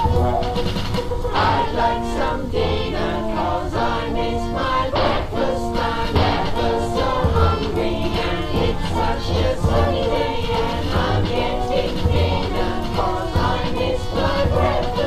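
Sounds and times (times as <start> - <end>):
steady low beat: 0.0 - 15.0
choir-like singing: 1.3 - 15.0.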